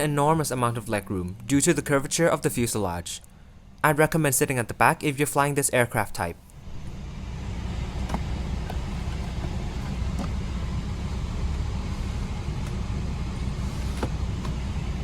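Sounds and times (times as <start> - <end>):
aircraft cabin rumble: 6.5 - 15.0.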